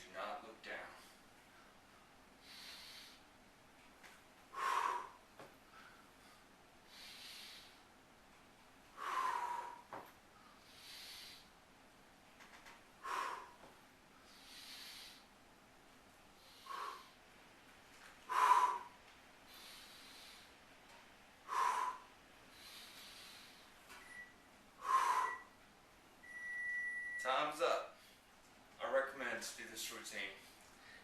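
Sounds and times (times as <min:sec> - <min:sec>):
man breathing hard: 0:02.4 - 0:03.3, 0:04.5 - 0:07.9, 0:08.9 - 0:11.6, 0:13.0 - 0:15.3, 0:16.4 - 0:17.2, 0:18.2 - 0:20.6, 0:21.4 - 0:24.2, 0:24.8 - 0:25.6.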